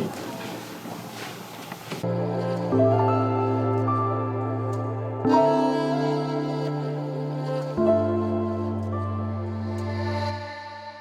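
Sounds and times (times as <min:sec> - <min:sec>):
faint room noise: 0:00.0 - 0:11.0
soft ambient background music: 0:02.0 - 0:11.0.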